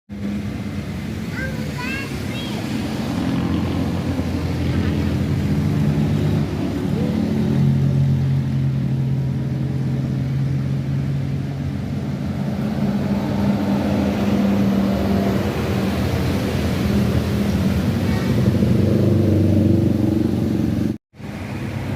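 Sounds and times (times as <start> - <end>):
bus engine running: 0.1 - 21.9.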